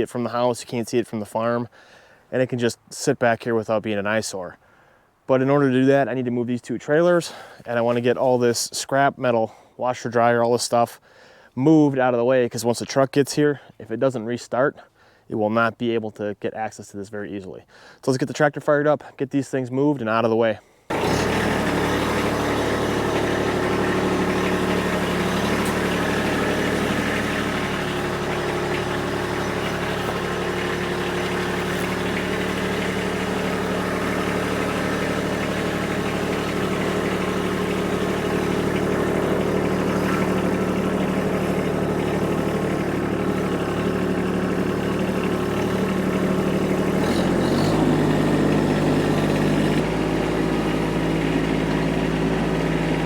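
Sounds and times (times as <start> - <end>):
tractor diesel engine running: 20.9 - 53.0.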